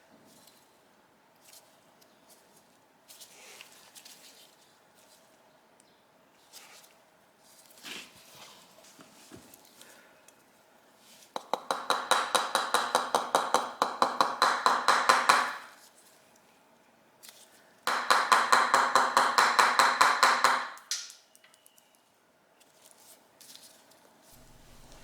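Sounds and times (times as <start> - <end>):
hammer tapping on metal: 11.4 - 15.7, 17.9 - 20.7, 24.4 - 25.0.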